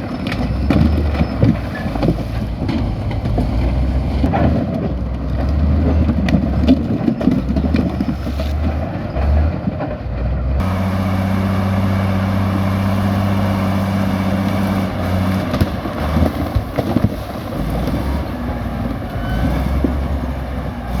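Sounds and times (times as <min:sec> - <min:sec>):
bulldozer diesel engine working: 0:00.0 - 0:21.0
knocks and clanks: 0:00.2 - 0:13.1.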